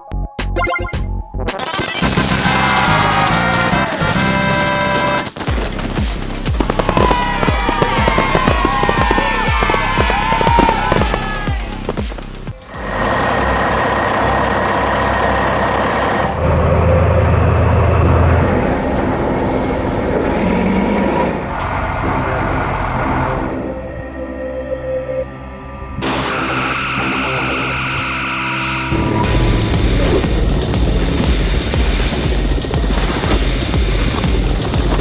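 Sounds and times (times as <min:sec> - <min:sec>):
upbeat music with brass: 0:00.4 - 0:12.7
heavy vehicle engine running: 0:11.2 - 0:23.5, 0:28.9 - 0:35.0.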